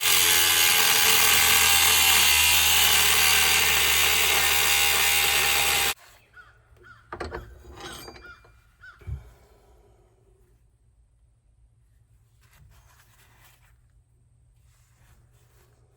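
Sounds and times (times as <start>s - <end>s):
power tool working metal: 0.0s - 6.0s.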